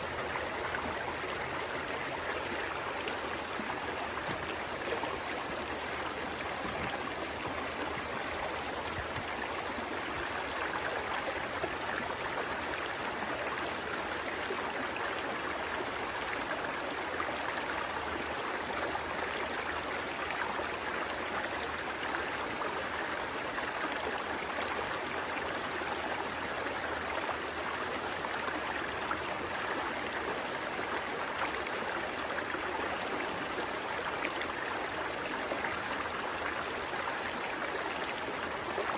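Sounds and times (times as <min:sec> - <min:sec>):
stream running: 0:00.0 - 0:38.9.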